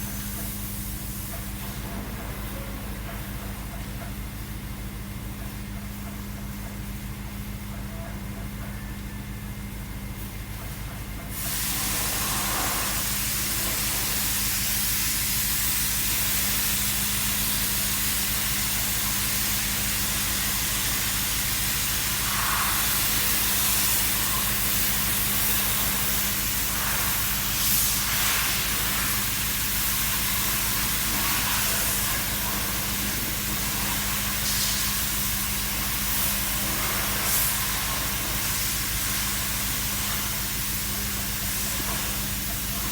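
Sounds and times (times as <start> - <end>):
car engine idling: 0.0 - 42.9
loud steady hiss: 11.3 - 42.9.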